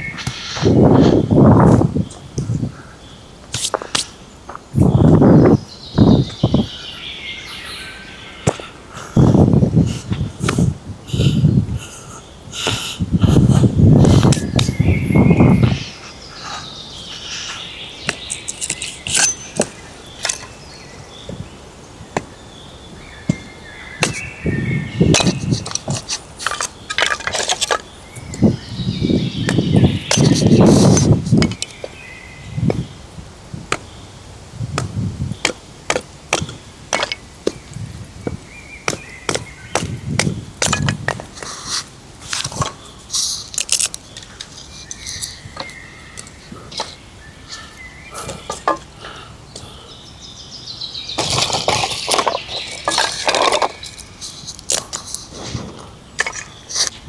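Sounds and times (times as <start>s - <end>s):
faint bird chirping: 0.0s - 33.1s, 42.5s - 57.0s
objects knocking and clicking: 25.1s - 27.9s, 29.5s - 31.7s, 34.8s - 42.7s, 51.2s - 57.0s.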